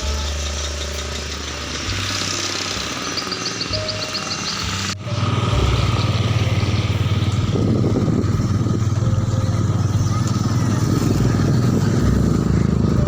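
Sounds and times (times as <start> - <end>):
motorcycle engine running: 0.0 - 13.0
vehicle noise: 0.0 - 13.0.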